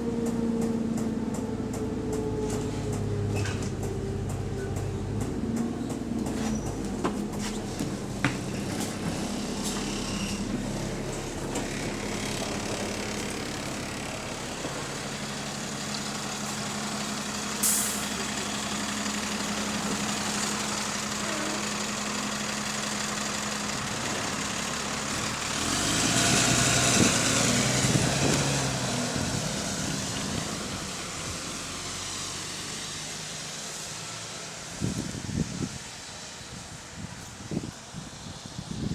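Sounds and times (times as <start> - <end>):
bus diesel engine humming: 0.0 - 38.9
sharp air hiss: 17.6 - 18.1.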